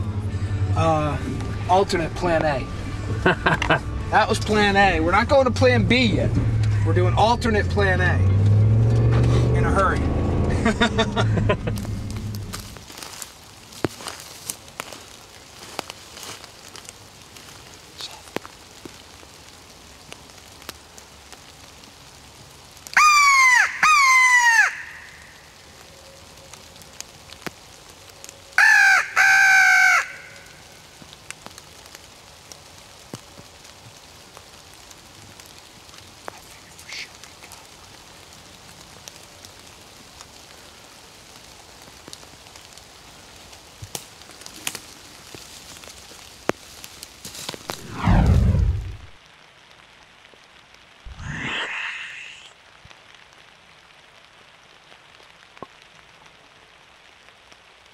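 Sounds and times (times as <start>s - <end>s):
rain hissing and dripping: 0.0s - 57.9s
crow cawing: 23.0s - 25.5s, 28.6s - 30.7s.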